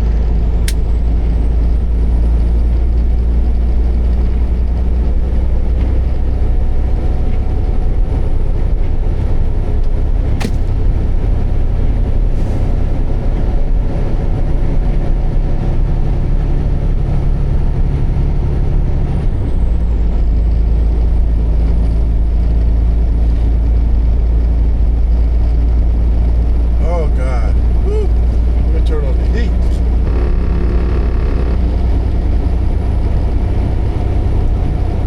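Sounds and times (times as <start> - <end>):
truck diesel engine rumbling: 0.0 - 35.0
sharp click: 0.6 - 0.9, 10.4 - 10.8.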